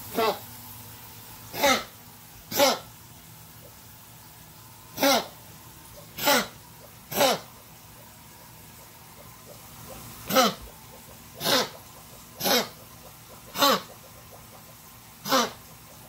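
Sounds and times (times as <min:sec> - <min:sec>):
animal coughing: 0:01.5 - 0:02.9, 0:04.9 - 0:05.4, 0:06.0 - 0:07.6, 0:10.2 - 0:14.1, 0:15.2 - 0:15.7.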